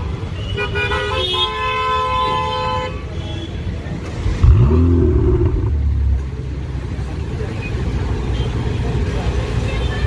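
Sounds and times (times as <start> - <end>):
car engine revving and rumbling: 3.9 - 8.2.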